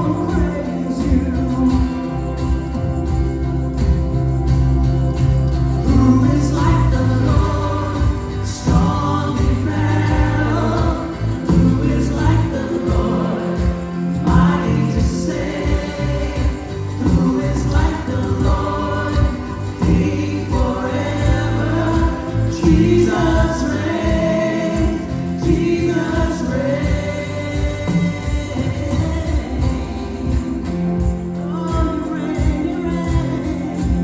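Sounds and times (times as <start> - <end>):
strong bass line: 0.0 - 31.5
gospel choir singing: 0.0 - 34.0.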